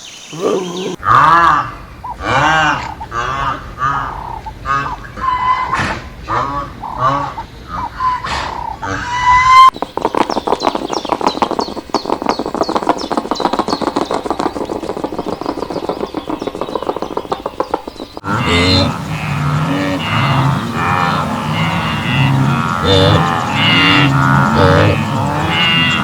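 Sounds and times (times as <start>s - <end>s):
flock of farm birds chattering: 0.0s - 1.0s, 1.9s - 14.1s, 15.2s - 26.0s
farm animal calls bending in pitch: 18.2s - 26.0s.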